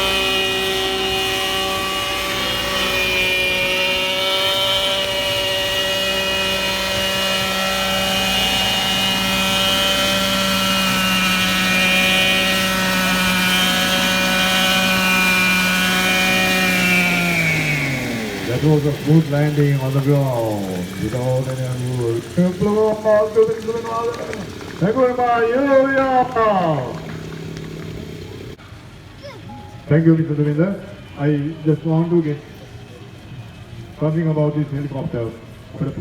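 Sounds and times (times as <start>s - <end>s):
rc helicopter engine and rotor: 0.0s - 28.6s.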